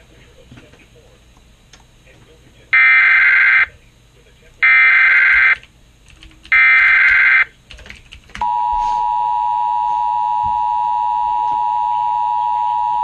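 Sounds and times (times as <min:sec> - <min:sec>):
digital data tones screech: 0:04.6 - 0:05.6.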